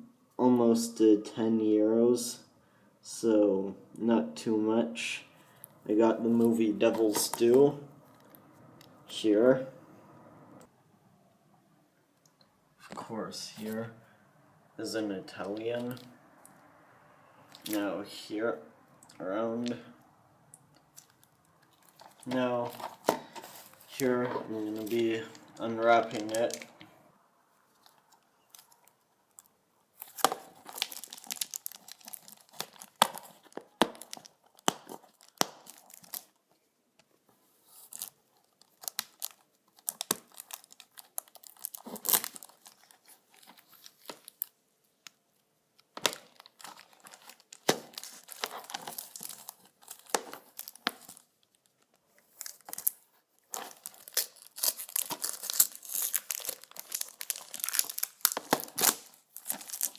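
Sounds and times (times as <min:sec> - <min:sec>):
plastic shrink-wrap crinkling: 0:20.6 - 0:26.9, 0:27.6 - 0:36.7, 0:37.6 - 0:44.6, 0:45.8 - 0:59.9.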